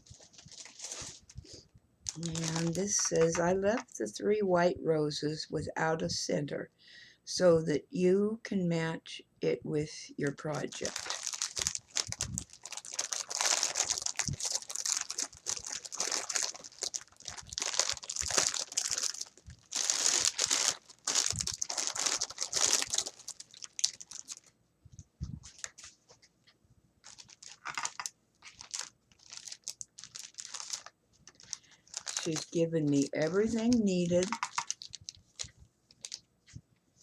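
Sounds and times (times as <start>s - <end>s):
packaging crinkling: 0.0s - 3.8s, 10.5s - 24.5s, 25.4s - 25.9s, 27.0s - 36.3s.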